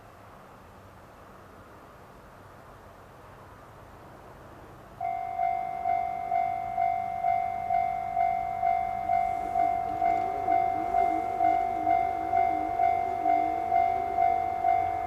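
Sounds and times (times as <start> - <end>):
level crossing alarm bell: 5.0 - 15.0.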